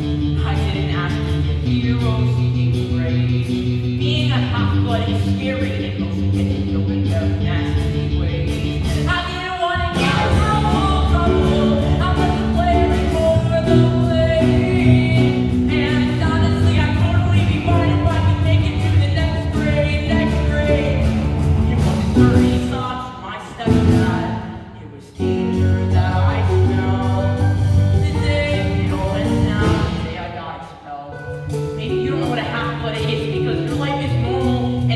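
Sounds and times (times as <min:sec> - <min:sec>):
rock band accompaniment: 0:00.0 - 0:22.9, 0:23.5 - 0:30.4, 0:31.2 - 0:34.9
people singing: 0:09.9 - 0:16.2.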